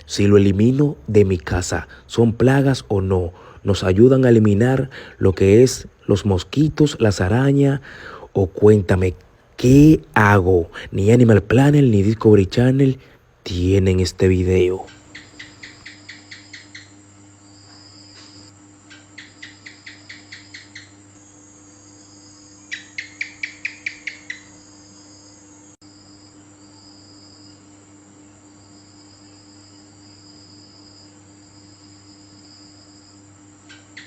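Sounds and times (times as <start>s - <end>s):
insects trilling: 0.0s - 34.0s
gecko chirping: 14.6s - 17.0s, 17.6s - 21.0s, 22.0s - 25.4s, 33.7s - 34.0s.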